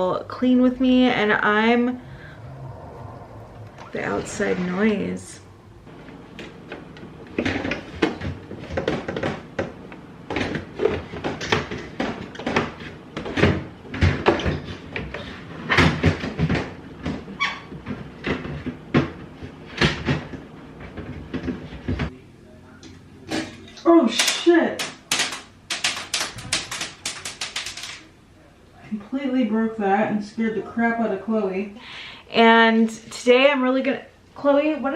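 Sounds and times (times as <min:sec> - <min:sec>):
rapid irregular knocking: 0:24.8 - 0:28.0.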